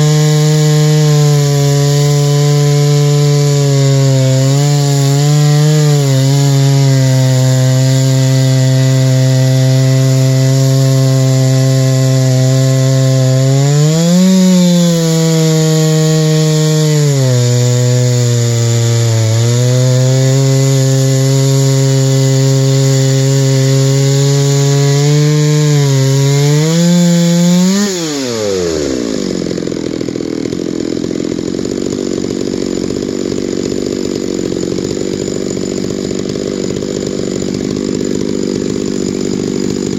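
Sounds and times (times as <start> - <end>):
chainsaw cutting log: 0.0 - 39.9.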